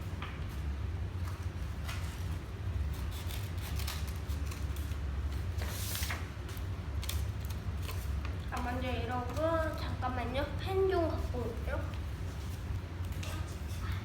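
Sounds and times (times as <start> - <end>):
steady low hum: 0.0 - 14.0
paper rustling and crinkling: 0.2 - 9.9.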